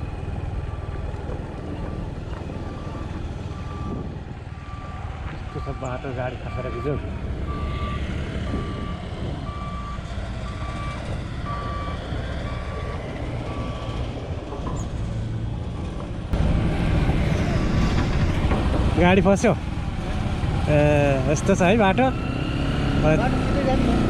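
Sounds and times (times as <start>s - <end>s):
engine rumble: 0.0s - 24.0s
reversing alarm beeping: 2.6s - 14.2s.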